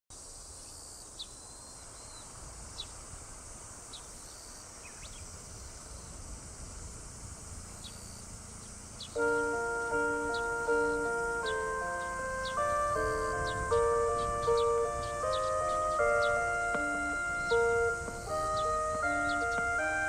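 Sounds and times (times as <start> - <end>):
bird chirping: 7.8 - 20.0.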